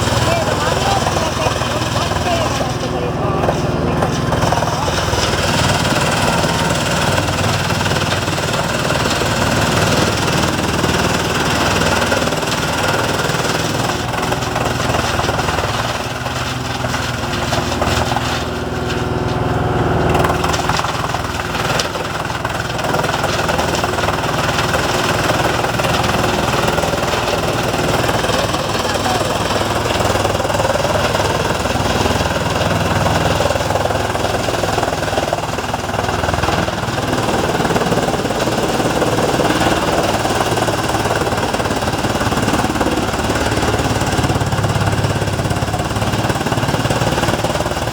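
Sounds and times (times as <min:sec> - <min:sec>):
wood chipper shredding wood: 0:00.0 - 0:47.9.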